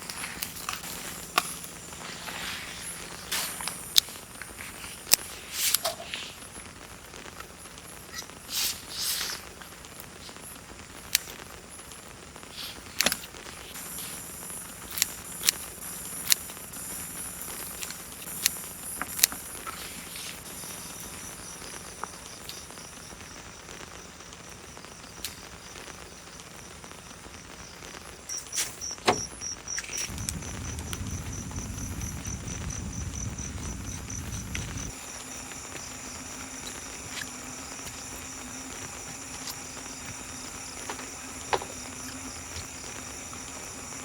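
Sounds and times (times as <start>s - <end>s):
insect chirping: 0.0s - 44.0s
outdoor hiss: 0.0s - 44.0s
sharp clicks and knocks: 36.6s - 43.2s.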